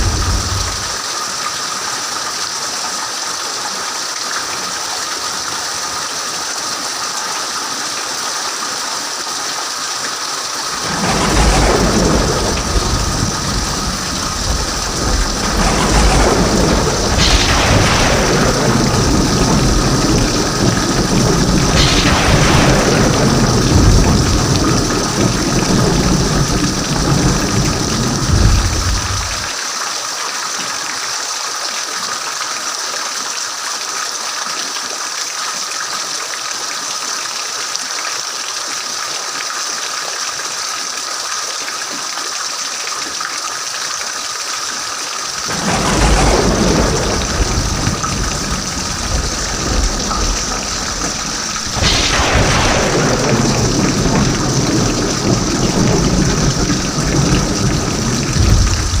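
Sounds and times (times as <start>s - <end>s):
rolling thunder: 0.0s - 1.0s, 10.6s - 29.6s, 45.4s - 59.0s
rain hissing: 0.0s - 2.1s, 9.7s - 29.6s, 44.8s - 59.0s.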